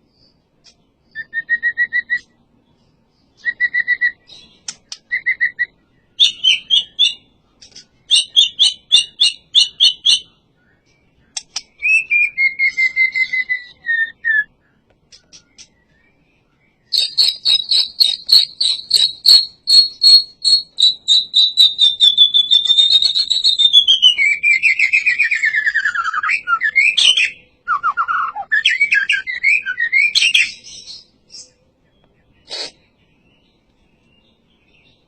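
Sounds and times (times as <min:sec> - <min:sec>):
songbird singing whistled notes: 0:00.0 - 0:35.0
bird clicking chips: 0:11.3 - 0:11.8, 0:16.9 - 0:24.3.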